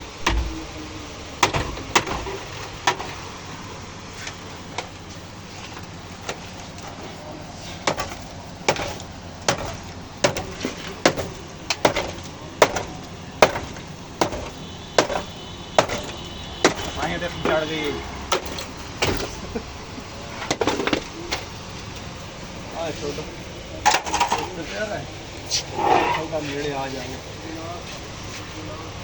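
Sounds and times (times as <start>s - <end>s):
hammer striking sheet metal: 0.2s - 3.0s.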